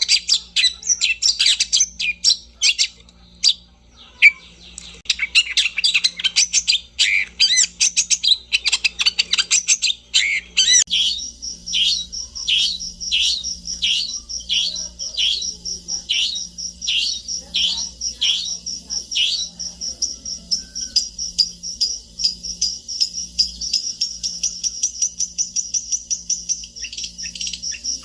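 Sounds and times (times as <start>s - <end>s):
bird chirping song: 0.0s - 28.0s
high pulsing trill: 10.9s - 28.0s.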